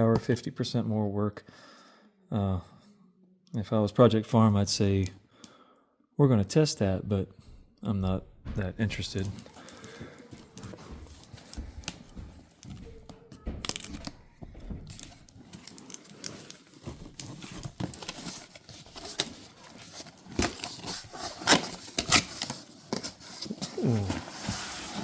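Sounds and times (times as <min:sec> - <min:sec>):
packaging torn and crinkled: 0:14.9 - 0:24.0.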